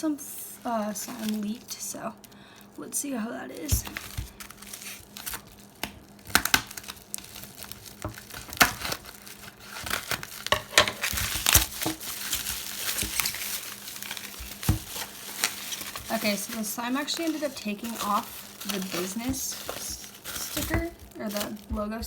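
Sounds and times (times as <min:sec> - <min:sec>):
plastic packaging crinkling and tearing: 0:00.0 - 0:22.0.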